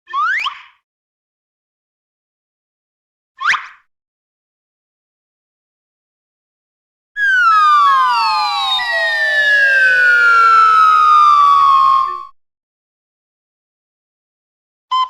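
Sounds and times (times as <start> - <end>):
cartoon falling whistle: 7.2 - 12.4.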